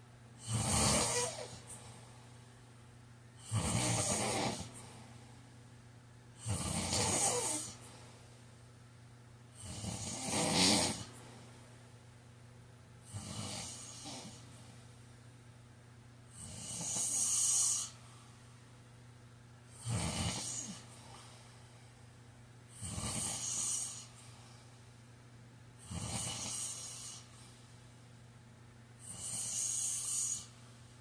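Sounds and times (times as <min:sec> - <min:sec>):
man snoring: 0:00.4 - 0:01.7, 0:03.4 - 0:04.8, 0:06.4 - 0:07.8, 0:09.6 - 0:11.1, 0:13.1 - 0:14.4, 0:16.4 - 0:18.0, 0:19.8 - 0:20.9, 0:22.8 - 0:24.1, 0:25.8 - 0:27.3, 0:29.0 - 0:30.5.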